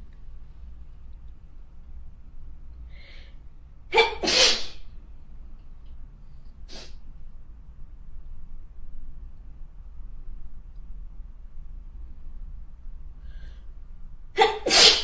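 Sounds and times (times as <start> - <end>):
breath noise: 2.8 - 3.4, 13.2 - 13.8
person sneezing: 3.9 - 4.8, 14.4 - 15.0.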